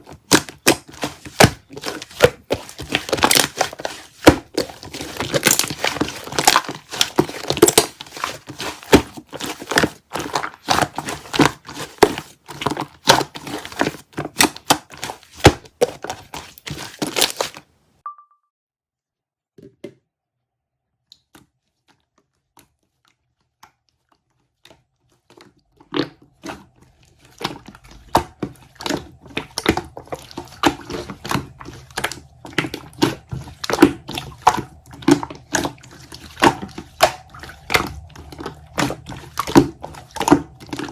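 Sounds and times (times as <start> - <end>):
slime squished by hand: 25.3 - 40.9.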